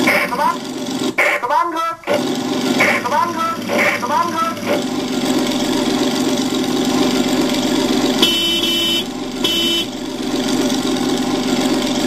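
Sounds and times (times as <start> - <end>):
short horn blasts: 2.8 - 4.8, 8.2 - 9.9.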